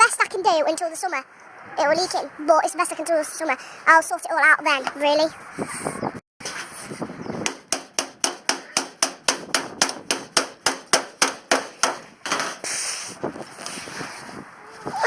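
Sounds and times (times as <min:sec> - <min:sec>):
hammer striking nails: 0:07.4 - 0:12.6.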